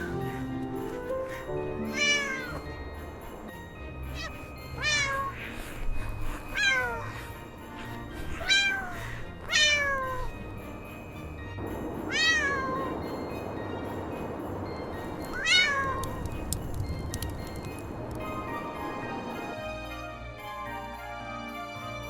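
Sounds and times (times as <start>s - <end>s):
soft background music: 0.0s - 22.0s
cat meowing: 1.9s - 2.6s, 4.2s - 5.4s, 6.5s - 7.1s, 8.4s - 10.3s, 12.1s - 12.9s, 15.4s - 16.2s.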